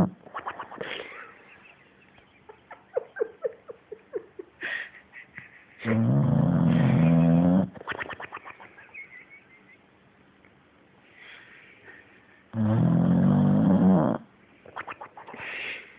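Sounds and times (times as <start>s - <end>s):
pet snoring: 5.8s - 7.7s, 12.5s - 14.3s.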